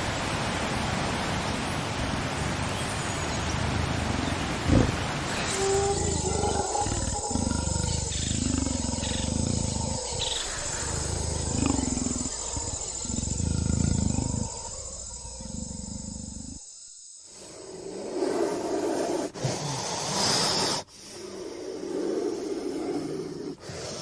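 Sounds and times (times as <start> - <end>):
deep animal growls and roars: 4.6 - 16.6.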